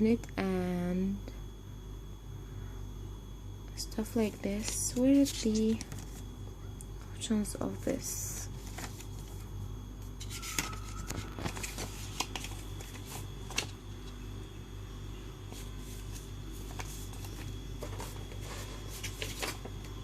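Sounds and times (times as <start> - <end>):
steady low hum: 0.0 - 20.0
paper leaflets rustling: 4.4 - 6.2, 8.5 - 9.5, 10.1 - 13.8, 15.5 - 20.0.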